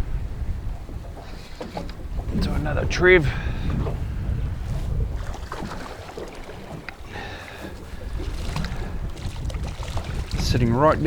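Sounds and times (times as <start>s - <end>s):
wind buffeting microphone: 0.0s - 11.0s
faint water splashing: 4.6s - 11.0s.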